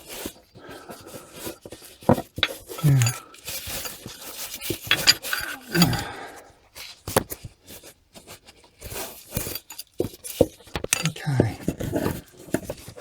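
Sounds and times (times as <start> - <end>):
spanner clicking on metal: 2.4 - 3.2, 4.8 - 6.0, 10.9 - 11.2.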